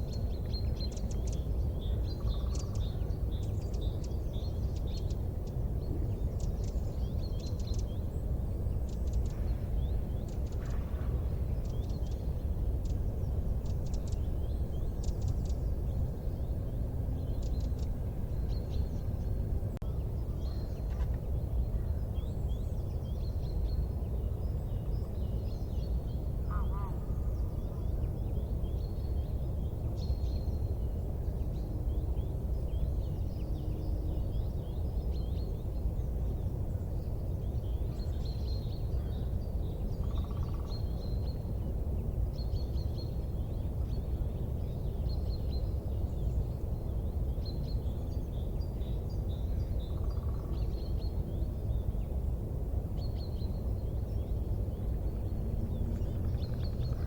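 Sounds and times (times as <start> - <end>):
low rumble: 53.0 - 57.0.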